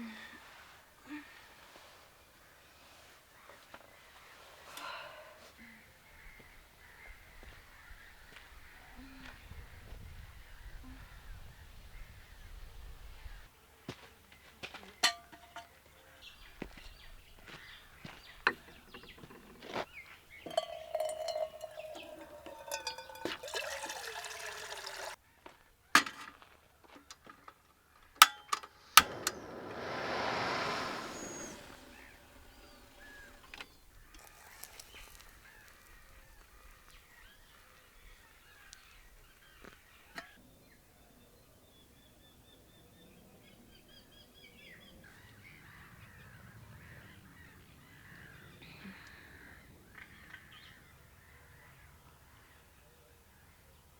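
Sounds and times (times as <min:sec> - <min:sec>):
liquid pouring: 0:20.4 - 0:25.2, 0:30.6 - 0:36.9
rushing swell: 0:28.9 - 0:33.5.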